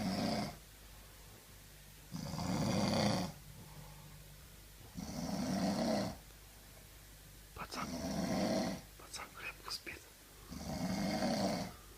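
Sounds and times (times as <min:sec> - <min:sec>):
man snoring: 0:00.0 - 0:00.6, 0:02.1 - 0:03.4, 0:05.0 - 0:06.2, 0:07.6 - 0:08.8, 0:10.5 - 0:11.8.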